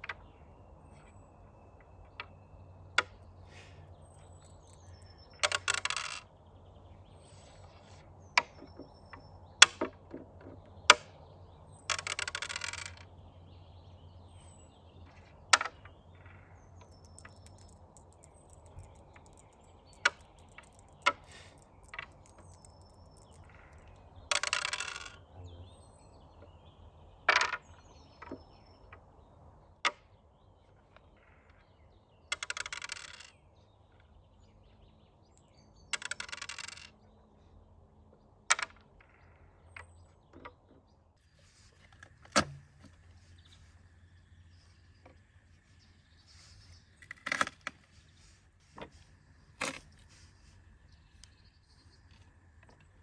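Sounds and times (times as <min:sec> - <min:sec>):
dice rattling across board: 0:04.1 - 0:06.3, 0:11.8 - 0:13.1, 0:15.6 - 0:25.2, 0:32.3 - 0:33.4, 0:35.9 - 0:37.0
checkers clicking: 0:16.8 - 0:25.1.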